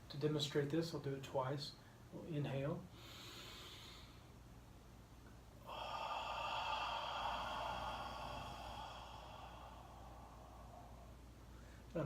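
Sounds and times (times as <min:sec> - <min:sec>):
man breathing in softly: 0:02.9 - 0:04.4, 0:05.6 - 0:12.0
man breathing out whispered haaa: 0:02.9 - 0:04.4, 0:05.6 - 0:11.9.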